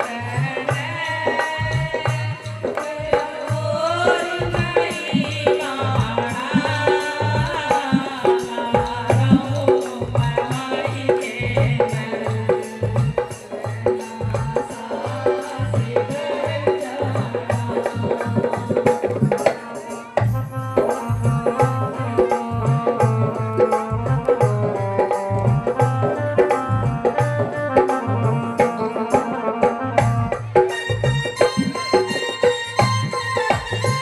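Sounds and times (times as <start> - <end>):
devotional music: 0.0 - 34.0
hand drum rhythm: 0.0 - 34.0.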